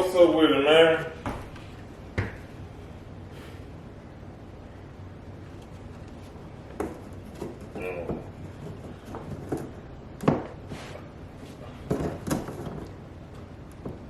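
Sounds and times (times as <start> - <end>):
objects knocking and clunking: 6.7 - 10.7, 11.6 - 14.0.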